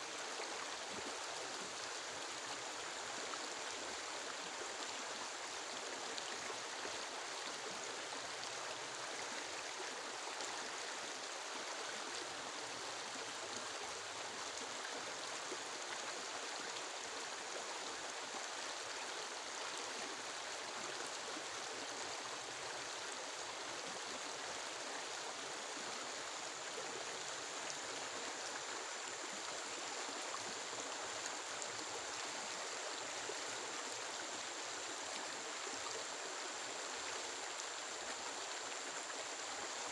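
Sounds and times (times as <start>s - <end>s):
heavy rain in forest: 39.0s - 39.9s.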